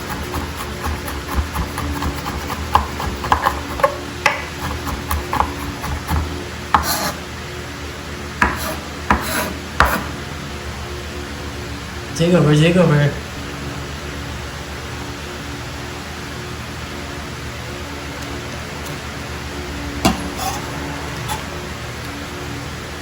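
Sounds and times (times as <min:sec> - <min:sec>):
knife chopping on cutting board: 0:00.0 - 0:07.2, 0:08.4 - 0:10.2, 0:20.1 - 0:21.5
knife scraping cutting board: 0:00.0 - 0:07.3, 0:08.4 - 0:10.2, 0:20.0 - 0:21.6.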